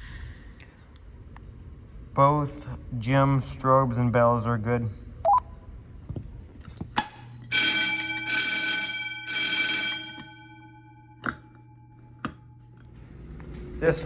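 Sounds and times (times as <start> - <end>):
fire alarm bell ringing: 7.4 - 12.9.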